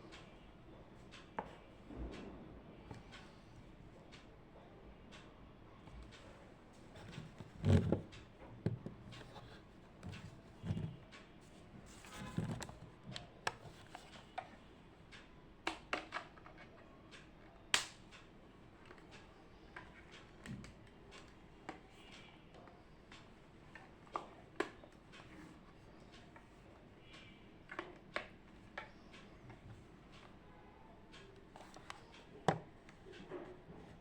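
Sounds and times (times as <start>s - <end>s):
objects clicking and tapping on desk: 6.9s - 11.3s, 11.9s - 14.6s, 15.7s - 16.8s.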